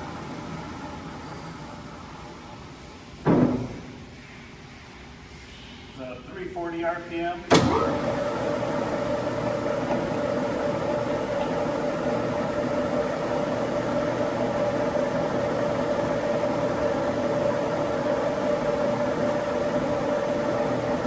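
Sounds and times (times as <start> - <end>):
lathe running: 7.6 - 21.0.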